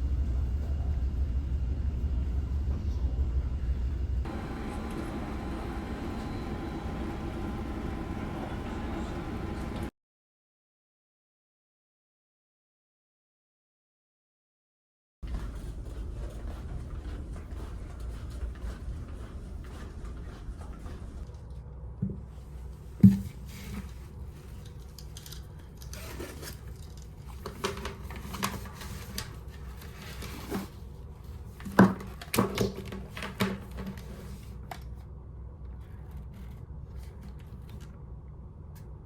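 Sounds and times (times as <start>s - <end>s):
ferry engine hum: 0.0s - 9.9s.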